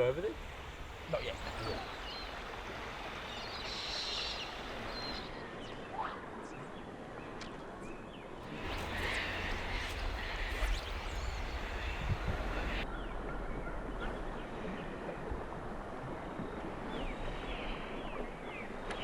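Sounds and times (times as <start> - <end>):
moving water: 0.0 - 7.8, 8.4 - 19.0
wind: 0.0 - 19.0
wind rumble on microphone: 0.0 - 19.0
bird chirps: 0.4 - 5.4, 8.4 - 12.8.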